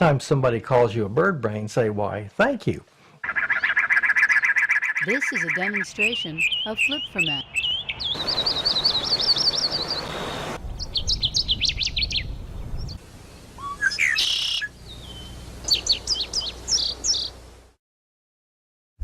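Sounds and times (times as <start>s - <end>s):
songbirds chirping: 2.6s - 17.7s.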